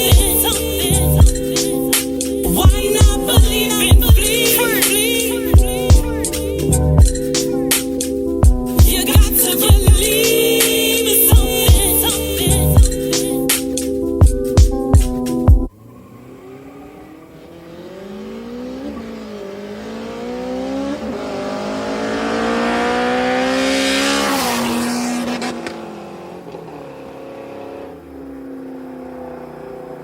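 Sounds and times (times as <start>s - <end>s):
beat music: 0.0s - 15.7s
car engine accelerating: 15.7s - 30.0s.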